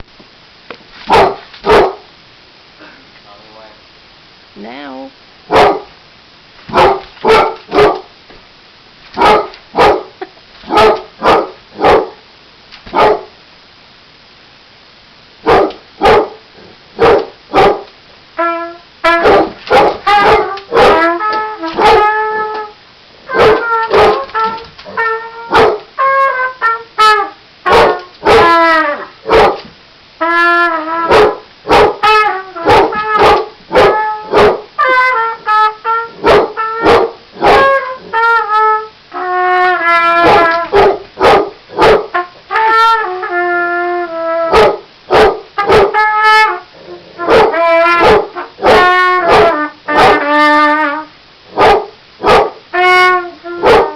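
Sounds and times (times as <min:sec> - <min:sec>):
dog barking: 0:01.1 - 0:02.1, 0:05.5 - 0:05.9, 0:06.7 - 0:08.1, 0:09.2 - 0:12.2, 0:12.9 - 0:13.3, 0:15.4 - 0:16.4, 0:17.0 - 0:17.9, 0:19.2 - 0:22.2, 0:23.3 - 0:24.6, 0:25.5 - 0:25.9, 0:27.7 - 0:28.6, 0:29.2 - 0:29.7, 0:31.1 - 0:32.0, 0:32.6 - 0:34.7, 0:36.1 - 0:37.8, 0:40.2 - 0:42.2, 0:44.5 - 0:46.0, 0:47.2 - 0:50.3, 0:51.5 - 0:52.6, 0:53.6 - 0:53.9
trumpet playing held notes: 0:17.0 - 0:29.6, 0:30.2 - 0:51.3, 0:52.3 - 0:53.9.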